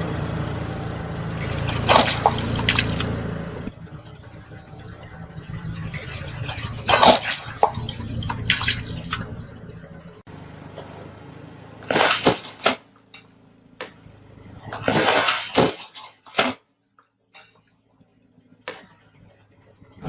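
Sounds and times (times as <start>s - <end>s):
car engine low hum: 0.0s - 15.7s, 17.8s - 20.0s
objects crunching under car tyre: 1.3s - 3.2s, 5.8s - 9.4s, 11.8s - 13.2s, 14.6s - 16.6s.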